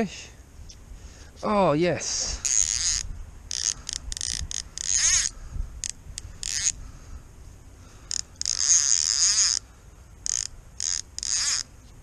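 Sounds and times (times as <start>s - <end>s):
fly reel ratchet buzzing: 2.4s - 6.8s, 8.0s - 11.7s.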